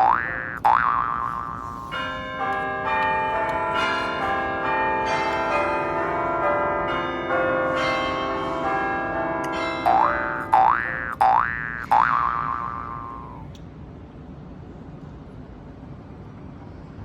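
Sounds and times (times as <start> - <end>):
bell-like ringing tones: 0.0 - 13.5.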